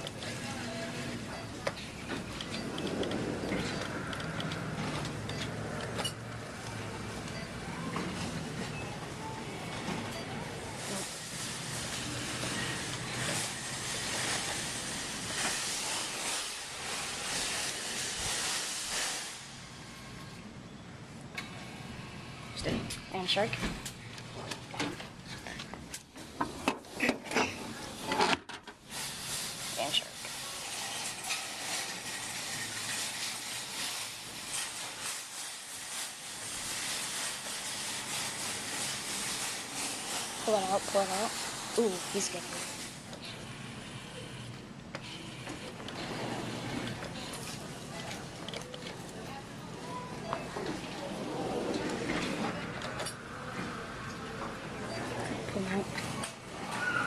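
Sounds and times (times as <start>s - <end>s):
steady hissing: 10.8s - 20.0s
steady hiss: 10.8s - 20.2s, 28.8s - 44.5s.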